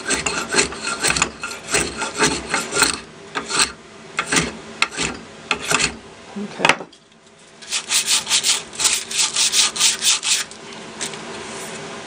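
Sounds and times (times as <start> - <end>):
wooden board scraped by hand: 7.6 - 10.5.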